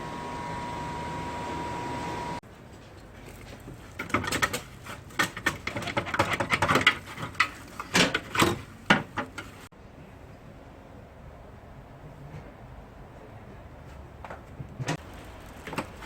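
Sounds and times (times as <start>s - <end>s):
clatter of sharp clicks and knocks: 3.9s - 9.6s.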